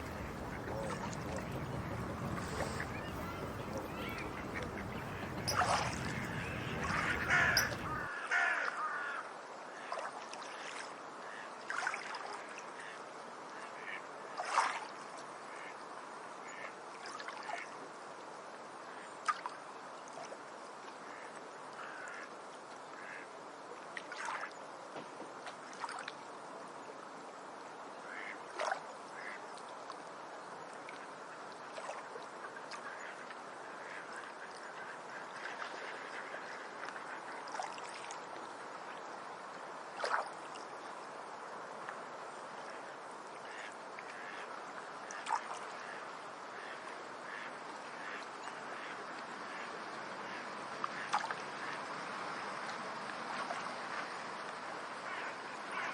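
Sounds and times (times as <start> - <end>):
ducks quacking: 0.0 - 8.1, 45.1 - 52.6, 55.0 - 55.9
steady background hiss: 0.0 - 8.1, 38.2 - 55.9.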